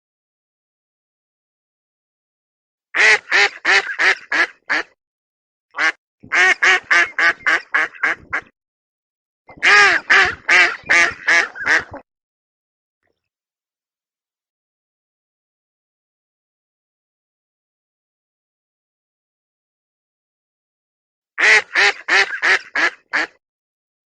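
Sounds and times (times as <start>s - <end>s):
duck quacking: 3.0s - 5.0s, 5.8s - 8.5s, 9.5s - 12.0s, 21.4s - 23.4s.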